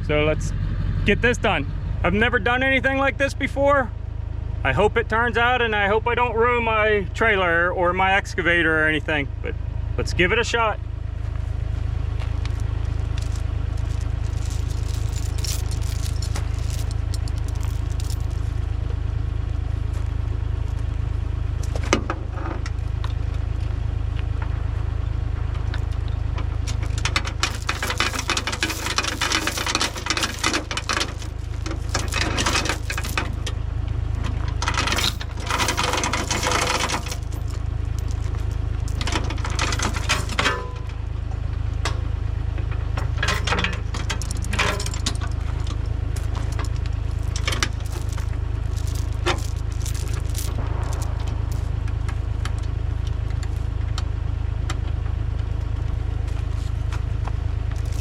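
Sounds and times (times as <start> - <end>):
machine engine humming: 0.0 - 5.0, 5.6 - 58.0
metal chain rattling and scraping: 12.3 - 18.6, 26.7 - 33.6, 34.2 - 40.9, 43.0 - 52.7, 57.7 - 58.0.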